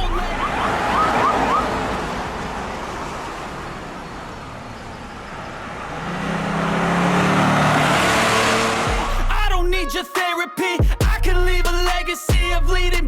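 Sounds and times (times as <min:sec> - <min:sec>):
rushing road noise: 0:00.0 - 0:09.4
vehicle engine hum: 0:00.0 - 0:09.9.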